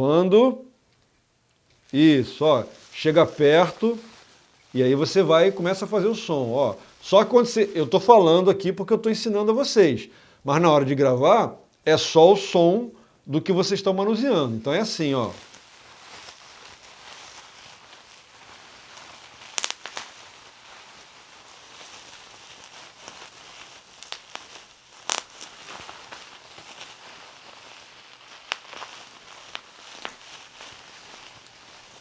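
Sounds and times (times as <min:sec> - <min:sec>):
bubble wrap crinkling: 0:01.5 - 0:09.2, 0:13.5 - 0:32.0
bubble wrap popping: 0:01.7 - 0:08.2, 0:13.7 - 0:32.0.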